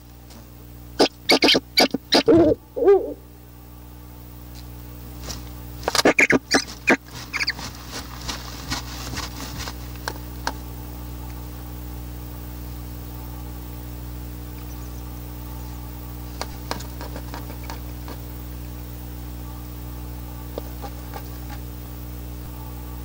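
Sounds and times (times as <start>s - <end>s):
steady low hum: 0.0s - 23.0s
animal squeaks: 1.0s - 3.2s, 6.0s - 7.6s.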